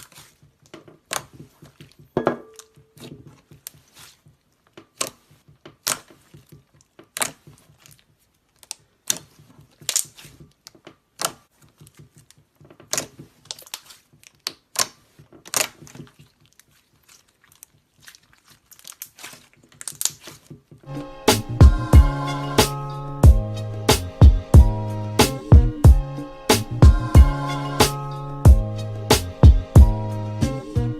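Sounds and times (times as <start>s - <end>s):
slime crackling and popping: 0.0s - 20.7s.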